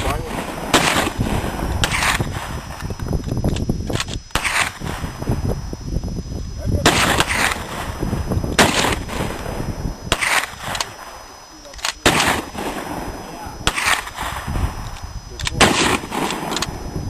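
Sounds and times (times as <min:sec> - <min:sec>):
gunshots with echo: 0:00.0 - 0:02.6, 0:06.8 - 0:08.0, 0:08.6 - 0:11.2, 0:12.0 - 0:14.8, 0:15.5 - 0:16.8.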